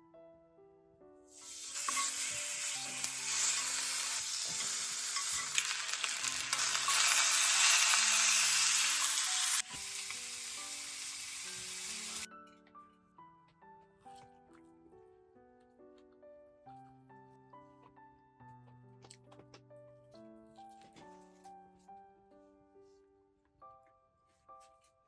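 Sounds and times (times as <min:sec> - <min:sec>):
soft piano music: 0:00.0 - 0:25.0
food sizzling in a frying pan: 0:01.3 - 0:12.3.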